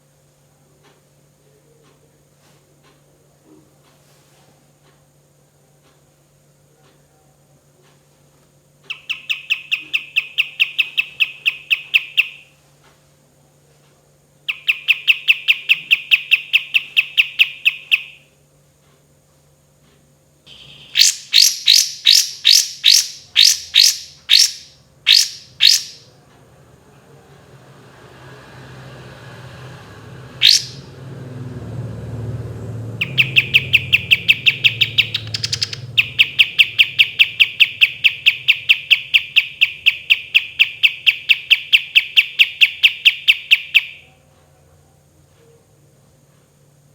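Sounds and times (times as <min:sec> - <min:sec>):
bulbul singing repeated notes: 0:08.9 - 0:12.5, 0:14.5 - 0:18.3, 0:20.5 - 0:26.1, 0:30.3 - 0:30.9, 0:32.9 - 0:44.2
bird rising whistle: 0:20.5 - 0:26.1, 0:30.4 - 0:30.9, 0:33.0 - 0:44.1.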